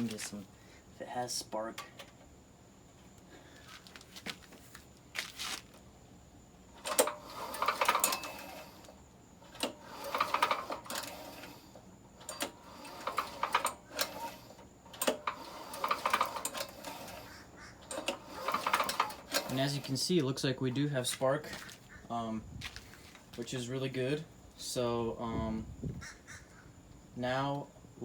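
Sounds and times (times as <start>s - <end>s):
engine rattly whirring: 6.7s - 21.8s.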